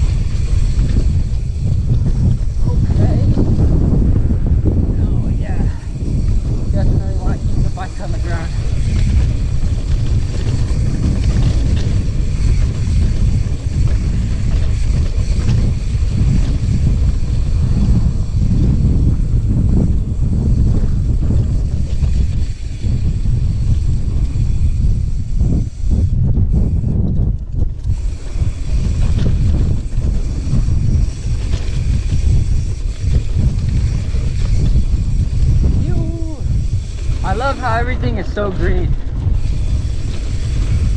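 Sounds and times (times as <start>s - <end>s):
wind buffeting microphone: 0.0s - 40.9s.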